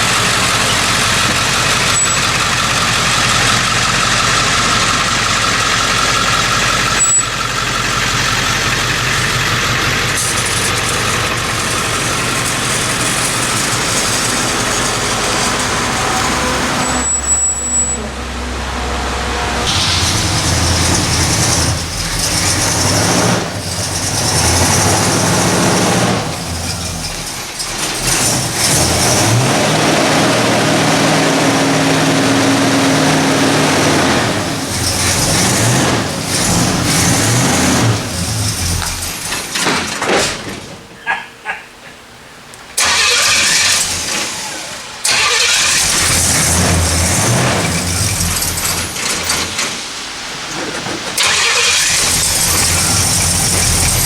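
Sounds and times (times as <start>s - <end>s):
car engines running and revving: 0.0s - 40.6s, 42.8s - 54.0s.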